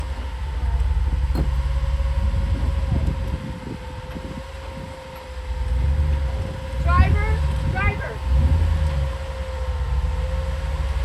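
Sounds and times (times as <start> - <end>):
car engine at low revs: 0.0 - 11.0.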